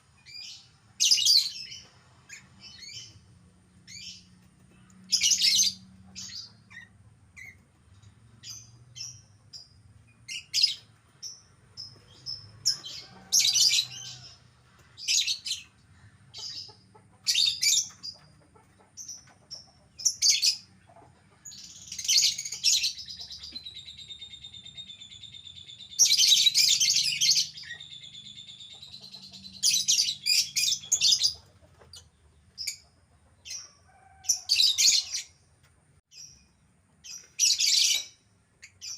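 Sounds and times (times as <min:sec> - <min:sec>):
lovebird chirping and trilling: 0:21.5 - 0:31.4, 0:37.0 - 0:38.9.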